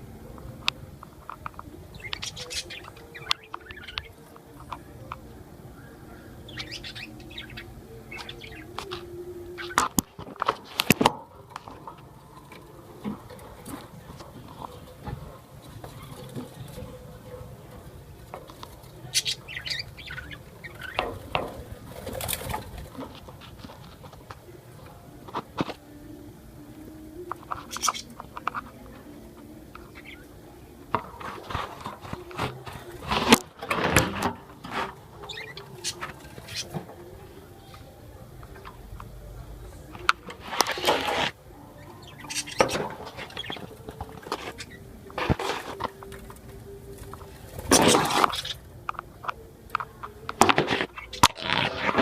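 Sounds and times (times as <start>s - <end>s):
lovebirds chirping: 0.0s - 52.0s
small parrots chirping: 6.1s - 8.7s, 42.0s - 43.8s
scratchy rustling: 31.0s - 37.1s, 40.0s - 41.4s, 42.3s - 48.6s, 49.8s - 52.0s.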